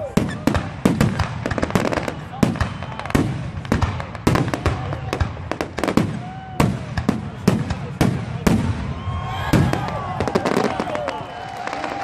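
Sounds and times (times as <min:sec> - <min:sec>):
firework whistles: 0:00.0 - 0:03.3
firework shells exploding: 0:00.0 - 0:12.0.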